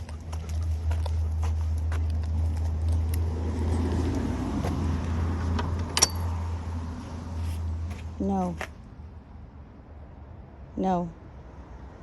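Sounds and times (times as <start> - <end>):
car passing: 0.0 - 12.0
light metallic jingling: 6.0 - 6.4.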